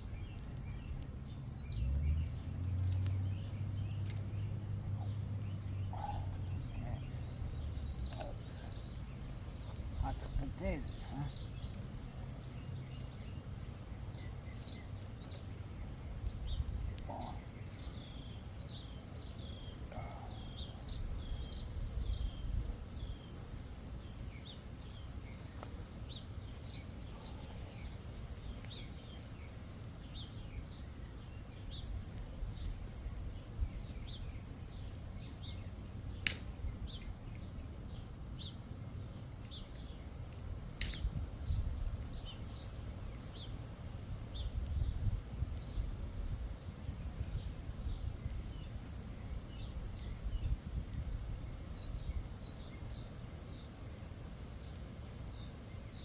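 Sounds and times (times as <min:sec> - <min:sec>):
campfire pops: 0:00.0 - 0:23.2, 0:24.0 - 0:43.6, 0:44.2 - 0:56.0.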